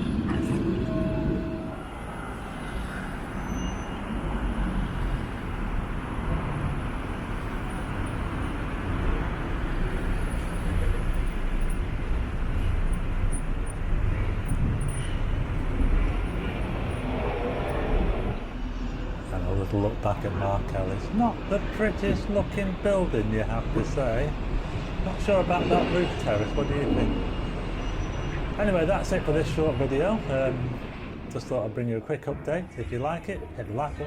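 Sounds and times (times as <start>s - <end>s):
road traffic rumble: 0.0s - 34.0s.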